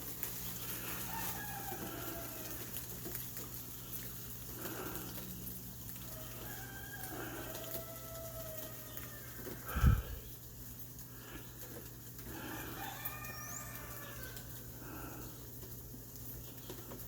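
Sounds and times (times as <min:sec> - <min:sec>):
hvac unit humming: 0:00.0 - 0:17.0
rooster crowing: 0:00.6 - 0:02.9, 0:05.9 - 0:10.2, 0:12.3 - 0:15.3.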